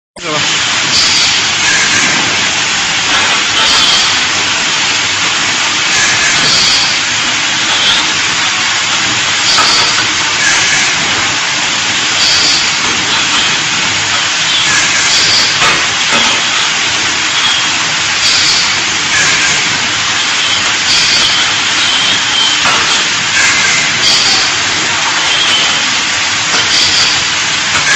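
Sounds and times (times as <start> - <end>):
laser welding machine hissing: 0.2 - 27.9.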